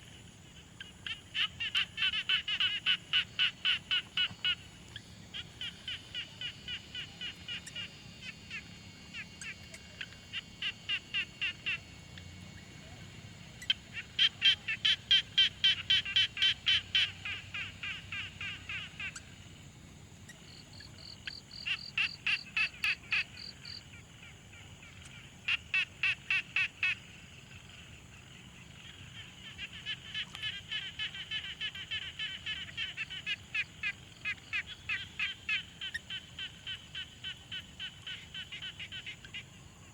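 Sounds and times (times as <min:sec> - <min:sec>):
frogs croaking: 0:00.0 - 0:39.9.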